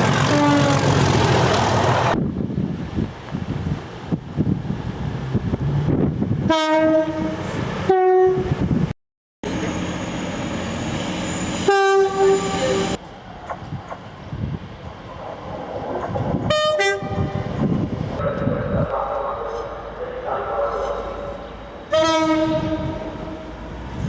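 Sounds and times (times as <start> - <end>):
rumble of moving train: 0.0 - 24.0
train two-tone horn: 0.2 - 0.9, 6.5 - 8.5, 10.6 - 13.0, 16.5 - 17.4, 21.9 - 23.4.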